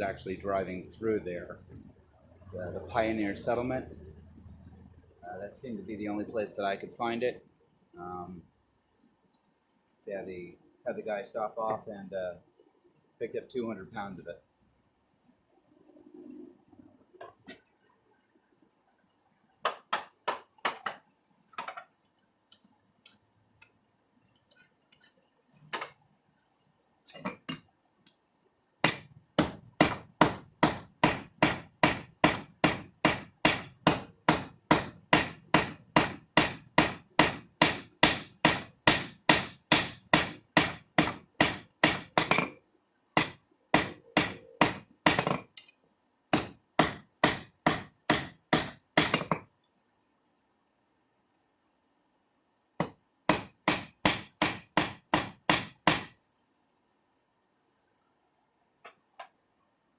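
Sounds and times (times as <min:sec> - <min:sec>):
hammer ringing on anvil: 0:44.2 - 0:44.8.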